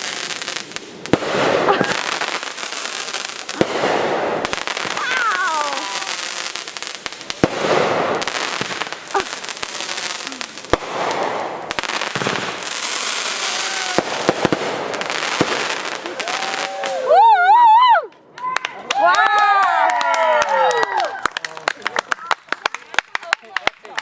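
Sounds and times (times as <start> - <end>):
fireworks bangs: 0.0 - 17.1
fireworks crackling: 0.0 - 17.3.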